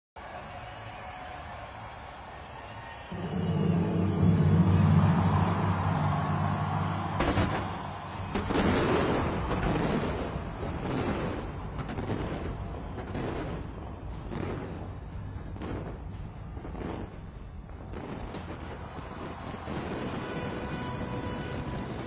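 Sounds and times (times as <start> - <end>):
fireworks bangs and pops: 7.1 - 22.0.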